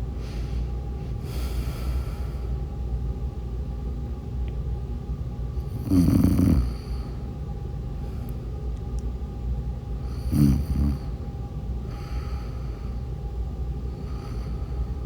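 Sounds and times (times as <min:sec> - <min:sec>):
person snoring: 0:05.8 - 0:07.0, 0:10.1 - 0:11.1.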